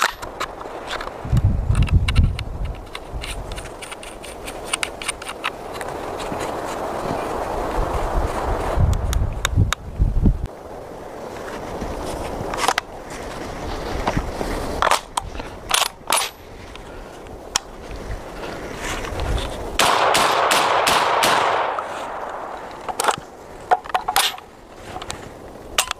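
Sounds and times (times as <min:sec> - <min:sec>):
airsoft guns firing: 0:19.8 - 0:22.7.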